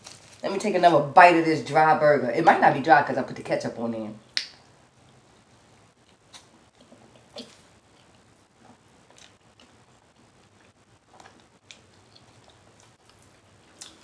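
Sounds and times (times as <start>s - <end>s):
faint chewing: 5.0s - 14.0s.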